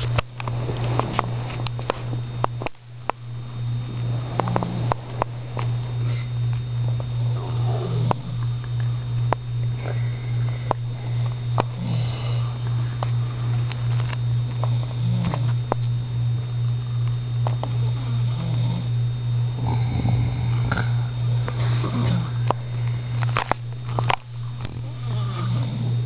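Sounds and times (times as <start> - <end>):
loud steady low hum: 0.0 - 26.0
person snoring: 3.9 - 6.4, 7.2 - 9.0, 9.7 - 13.7, 14.9 - 15.5, 17.8 - 23.2, 23.8 - 26.0.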